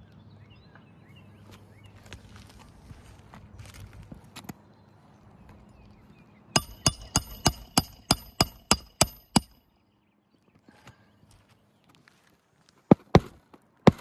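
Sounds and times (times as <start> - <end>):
hammer striking a nail: 6.6 - 9.6.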